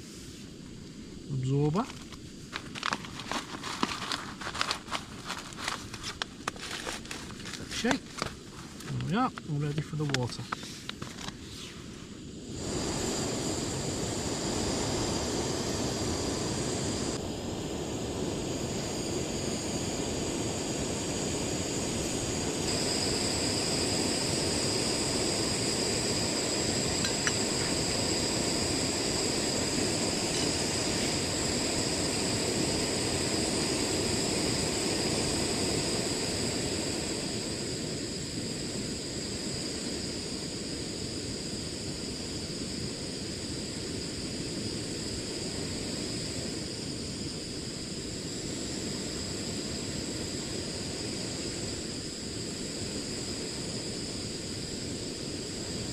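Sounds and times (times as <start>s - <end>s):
gas stove burner roaring: 12.1s - 42.4s.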